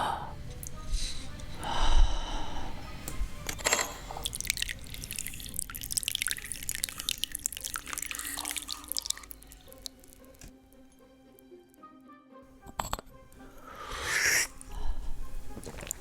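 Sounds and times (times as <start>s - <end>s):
water dripping and splashing: 4.1s - 10.5s, 15.5s - 16.0s.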